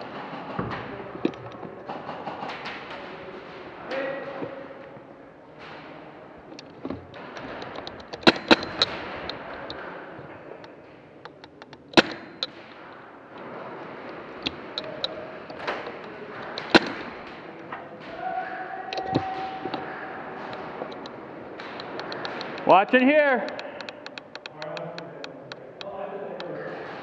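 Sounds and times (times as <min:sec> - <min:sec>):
pellets striking: 0:06.4 - 0:10.3, 0:11.3 - 0:24.9
airsoft guns firing: 0:10.9 - 0:18.2, 0:19.0 - 0:24.5.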